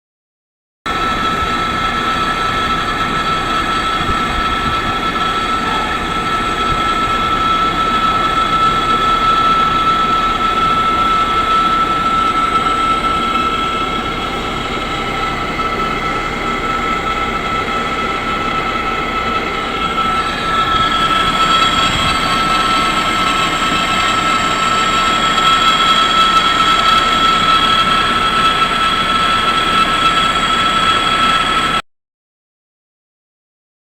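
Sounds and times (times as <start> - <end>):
metal lathe cutting whine: 0.9 - 31.8.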